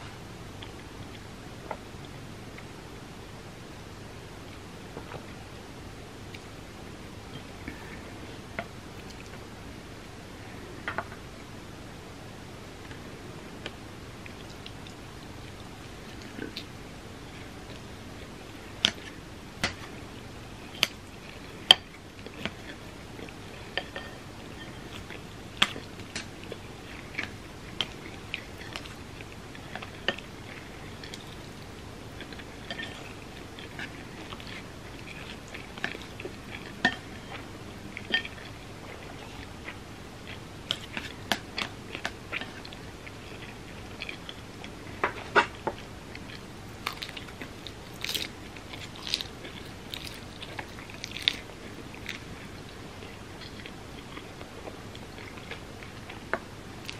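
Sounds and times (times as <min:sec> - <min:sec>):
chewing food: 0:13.6 - 0:16.7, 0:20.6 - 0:56.9.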